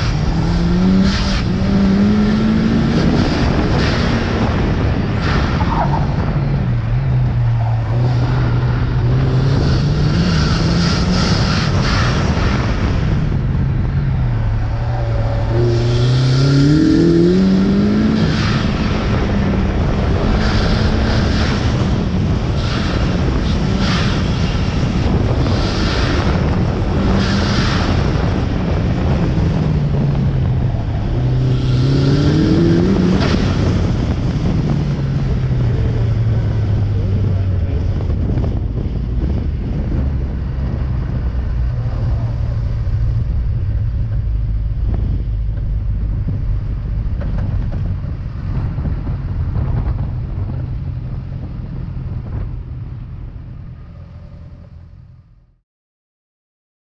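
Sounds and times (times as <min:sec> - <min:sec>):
car engine accelerating hard: 0:00.0 - 0:55.4.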